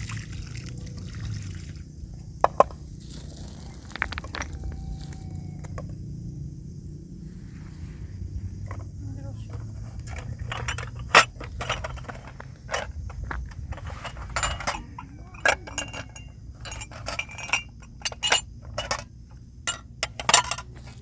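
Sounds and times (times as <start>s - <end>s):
steady low hum: 0.0s - 21.0s
sharp clinks and knocks: 8.6s - 21.0s.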